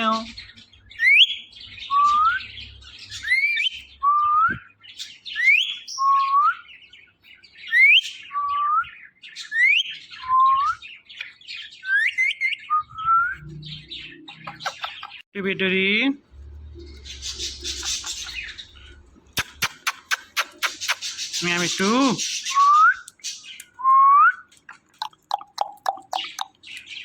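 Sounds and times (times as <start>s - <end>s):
parrot whistled calls: 19.4s - 23.1s.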